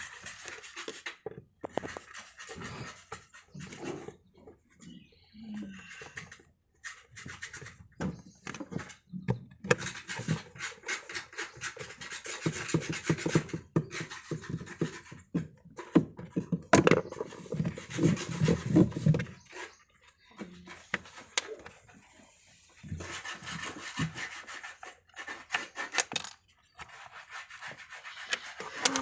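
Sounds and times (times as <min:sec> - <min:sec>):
screwdriver scraping and clicking: 0:27.9 - 0:29.0.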